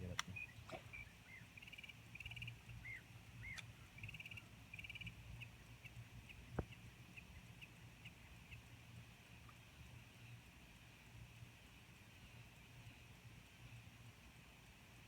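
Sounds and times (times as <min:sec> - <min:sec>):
small animal chirping and trilling: 0:00.0 - 0:08.6.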